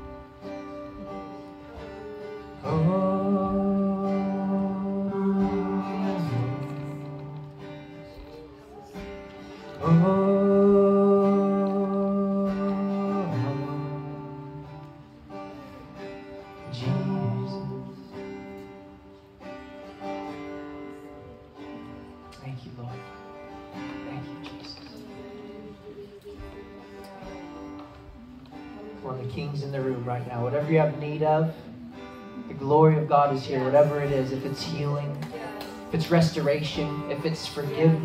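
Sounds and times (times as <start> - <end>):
acoustic guitar: 0.0 - 38.0
person singing long notes: 1.0 - 15.2.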